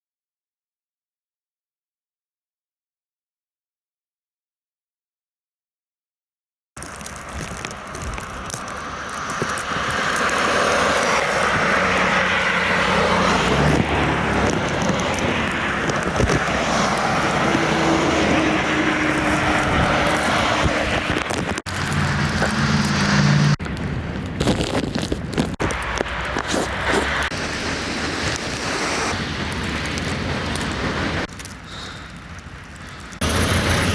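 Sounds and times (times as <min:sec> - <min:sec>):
low vehicle engine hum: 0:06.8 - 0:33.9
wind rushing: 0:07.3 - 0:31.3.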